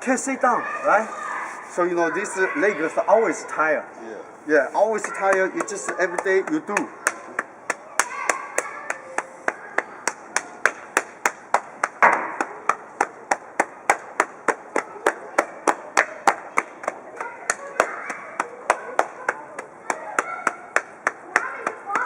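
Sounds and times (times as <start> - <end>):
hand slapping a leg: 4.8 - 22.0.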